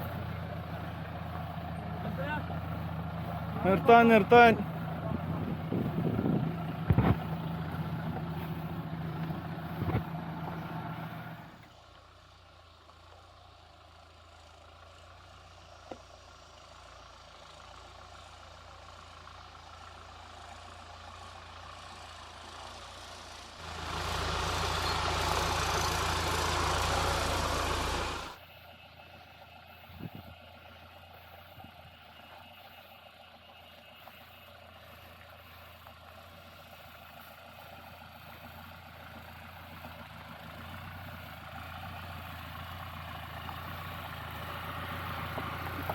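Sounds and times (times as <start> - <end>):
off-road vehicle engine idling: 0.0 - 45.9
loud noisy engine burst: 23.6 - 28.4.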